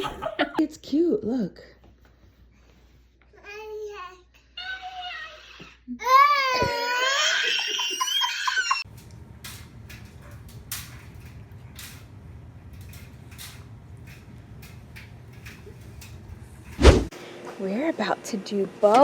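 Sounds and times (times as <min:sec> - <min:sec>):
child squealing laughter: 0:04.6 - 0:08.8.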